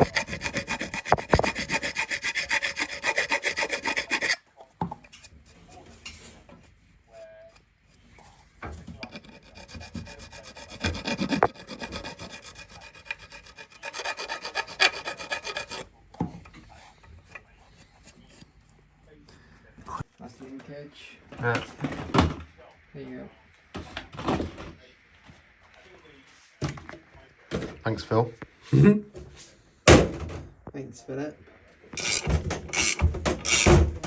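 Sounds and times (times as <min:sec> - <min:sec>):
hand tool rasping: 0:00.0 - 0:04.4, 0:08.8 - 0:15.9, 0:32.0 - 0:34.0.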